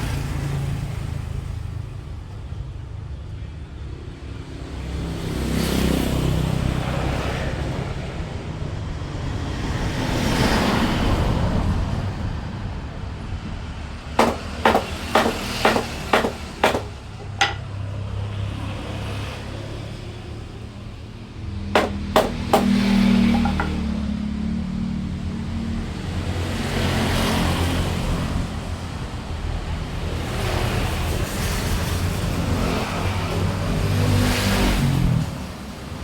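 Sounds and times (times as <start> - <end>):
passing road traffic: 4.8 - 36.0
hammer knocking on wood: 14.2 - 17.7, 21.8 - 23.8.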